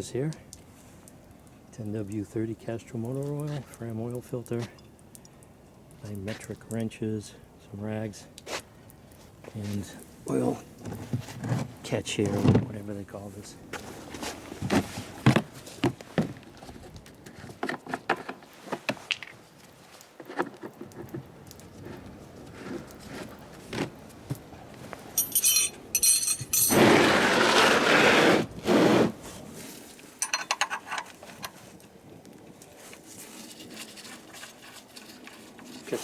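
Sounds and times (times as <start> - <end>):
metal hand tools clinking: 25.2 - 26.9, 30.2 - 31.1
rasping jangle: 25.2 - 26.9
loud scraping noise: 26.6 - 29.2.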